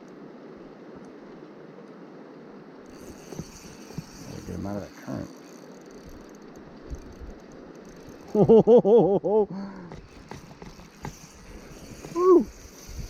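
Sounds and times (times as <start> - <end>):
man whooping: 12.1 - 12.5.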